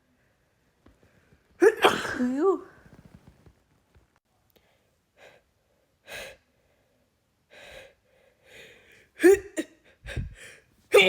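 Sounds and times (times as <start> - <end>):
woman gasping breaths: 7.5 - 10.7.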